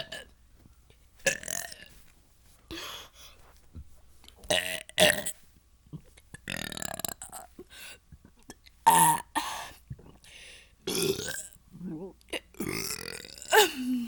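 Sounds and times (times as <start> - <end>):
person burping: 1.3 - 1.9, 5.9 - 7.6, 8.5 - 10.2, 10.9 - 14.0.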